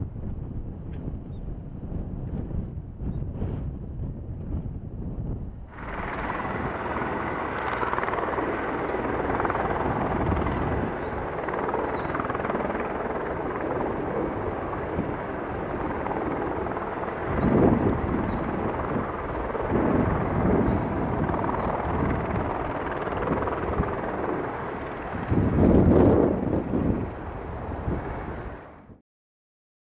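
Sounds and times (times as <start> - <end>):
wind buffeting microphone: 0.0 - 29.0
helicopter noise: 5.5 - 29.0.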